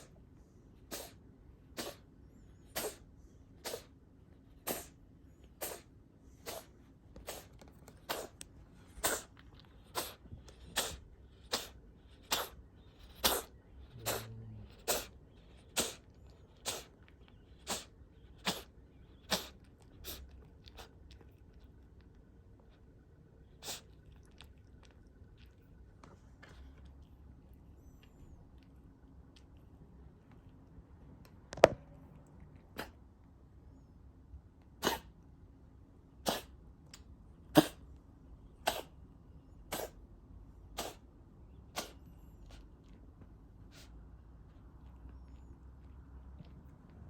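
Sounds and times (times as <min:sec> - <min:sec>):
cat coughing: 0:00.8 - 0:03.9, 0:04.6 - 0:05.0, 0:05.6 - 0:17.0, 0:17.6 - 0:20.9, 0:34.8 - 0:35.2, 0:36.2 - 0:36.6, 0:37.5 - 0:37.8, 0:38.6 - 0:39.0, 0:39.6 - 0:40.0, 0:40.7 - 0:41.0, 0:41.7 - 0:42.0.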